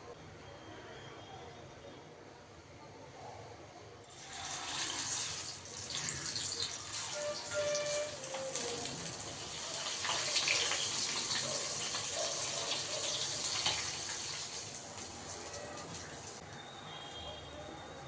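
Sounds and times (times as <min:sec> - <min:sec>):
fish sizzling in hot oil: 0:04.1 - 0:16.8.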